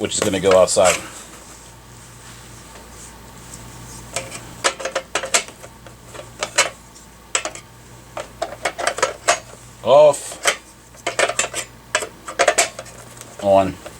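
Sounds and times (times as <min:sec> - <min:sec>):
clicks and clinks of electrical box: 0:04.2 - 0:09.5, 0:10.4 - 0:13.9.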